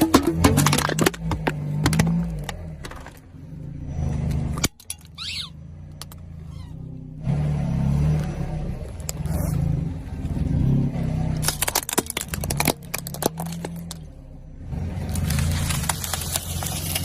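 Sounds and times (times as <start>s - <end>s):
sharp pops and cracks under tyres: 0.0s - 3.4s, 4.2s - 5.3s, 5.9s - 6.3s, 8.1s - 10.4s, 11.2s - 14.3s, 14.9s - 17.0s
car engine running: 0.0s - 17.0s.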